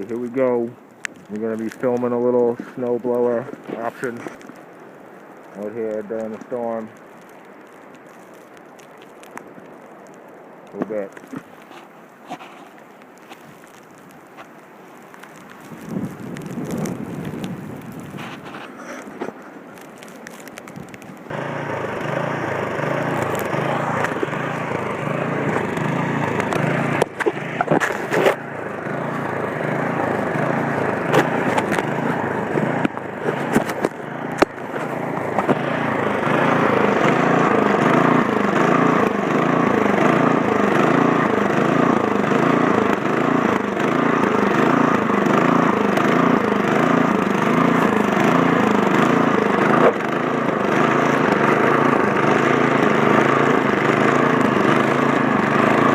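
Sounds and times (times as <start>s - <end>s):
snowblower engine running: 21.3s - 55.9s.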